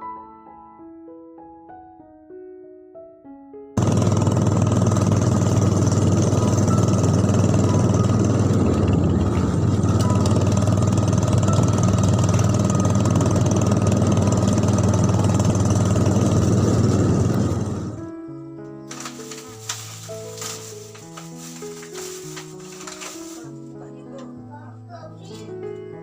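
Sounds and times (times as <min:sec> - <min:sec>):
small engine running: 0:03.8 - 0:18.1, 0:18.9 - 0:23.5.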